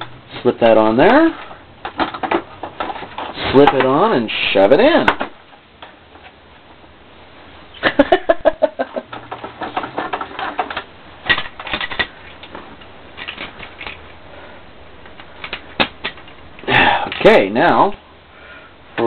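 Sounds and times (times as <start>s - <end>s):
plastic clicks rattles and knocks: 1.8s - 4.0s, 8.9s - 14.0s, 15.1s - 17.3s.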